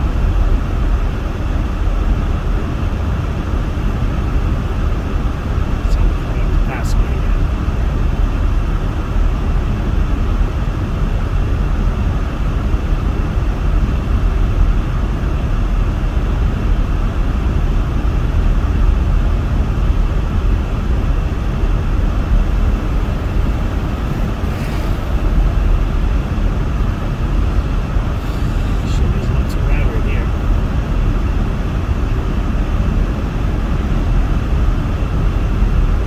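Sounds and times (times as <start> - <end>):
heater fan blowing: 0.0 - 36.0
tyre and engine rumble: 18.9 - 35.7.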